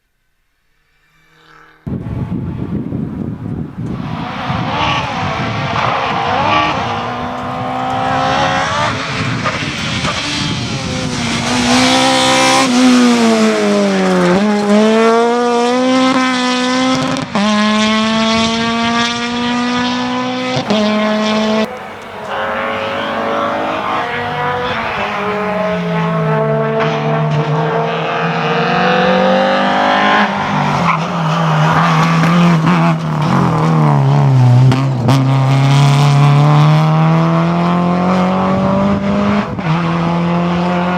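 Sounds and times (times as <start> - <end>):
rally car engine revving: 1.4 - 40.9.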